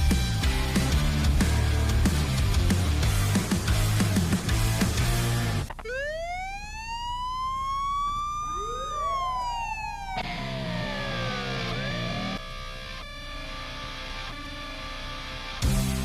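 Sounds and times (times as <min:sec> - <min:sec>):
heavy guitar music: 0:00.0 - 0:05.8, 0:10.2 - 0:16.0
ambulance siren wail: 0:05.8 - 0:12.4.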